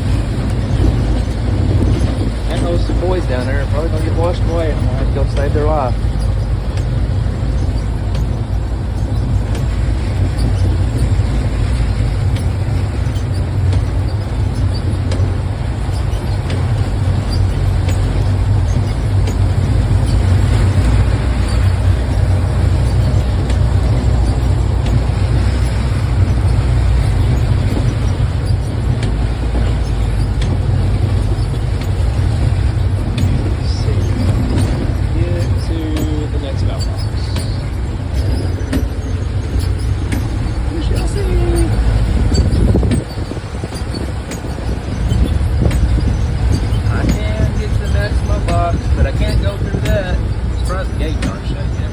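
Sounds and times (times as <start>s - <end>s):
car engine rumbling: 0.0s - 51.9s
heavy rain: 0.0s - 51.9s.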